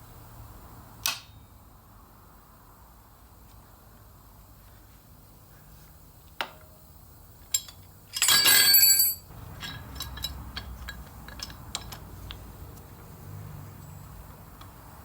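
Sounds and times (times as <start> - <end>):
jangling ringing metal: 7.5 - 12.0
metal hand tools clinking: 7.5 - 12.1
small irregular ticks and clicks: 14.5 - 14.8.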